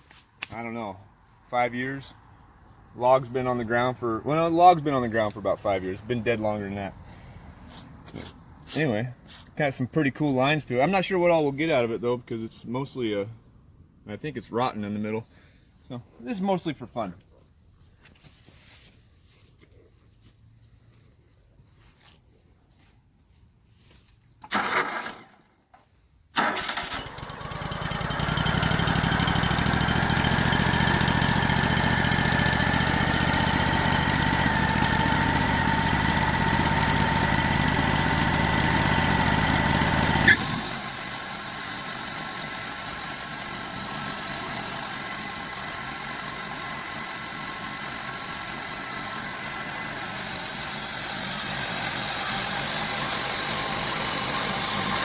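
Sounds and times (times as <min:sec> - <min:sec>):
sawmill engine starting and running: 0:24.4 - 0:25.8, 0:26.4 - 0:55.0.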